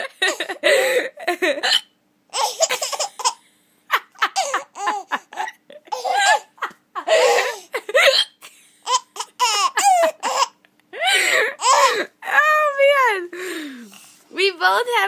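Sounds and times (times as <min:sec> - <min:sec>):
baby laughing: 0:00.0 - 0:03.4, 0:04.0 - 0:12.1.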